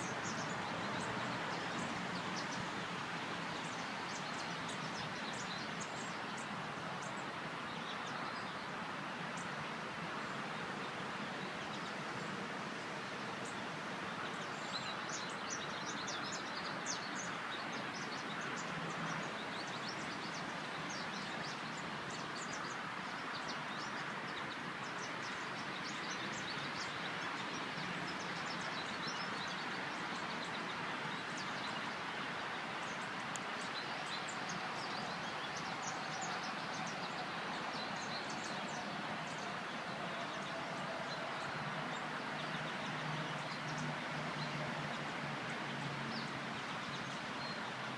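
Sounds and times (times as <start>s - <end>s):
outdoor background rush: 0.0s - 47.9s
small birds chirping: 13.4s - 44.7s.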